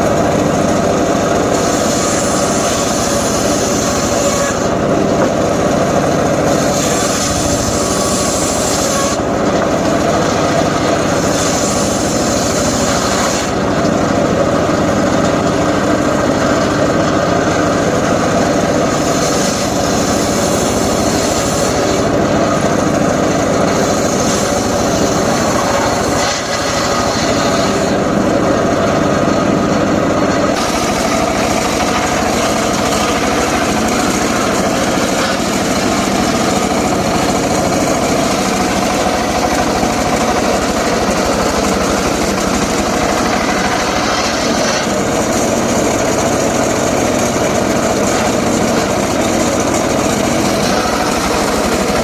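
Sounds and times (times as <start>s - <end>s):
circular saw running: 0.0s - 52.0s.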